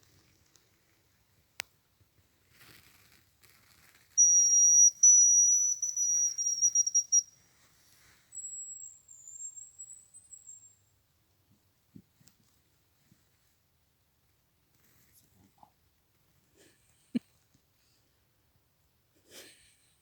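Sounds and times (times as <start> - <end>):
high bird whistles: 4.2 - 7.3, 8.3 - 10.7.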